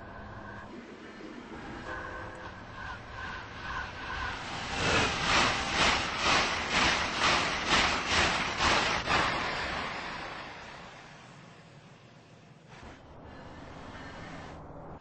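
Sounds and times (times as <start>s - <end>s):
train wheels knocking on rails: 4.8s - 10.5s.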